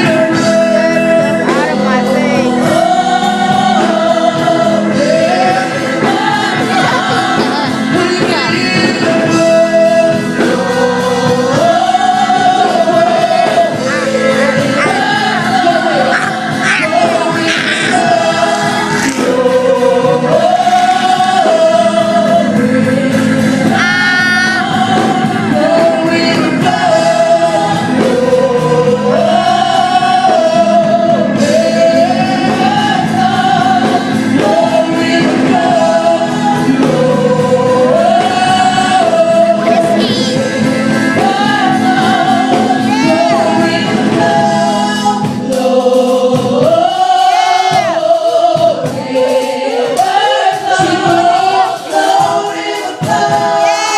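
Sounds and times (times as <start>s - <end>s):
choir singing: 0.0s - 53.9s.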